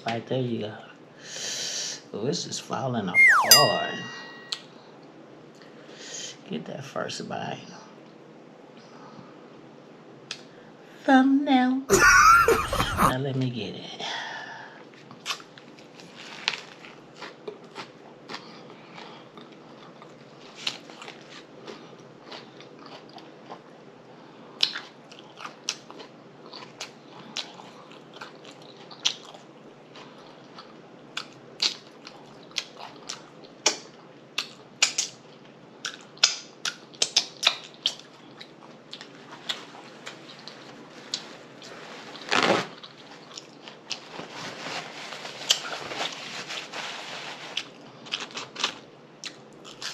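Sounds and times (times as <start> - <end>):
lip smacks and mouth clicks: 35.8 - 39.1.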